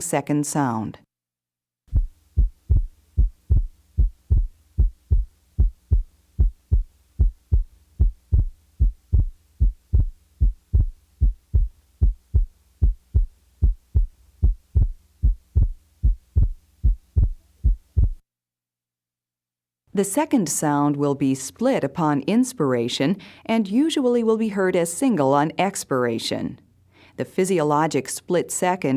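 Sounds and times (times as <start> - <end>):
faint steady hum: 1.9 - 18.2
heartbeat through stethoscope: 1.9 - 18.2.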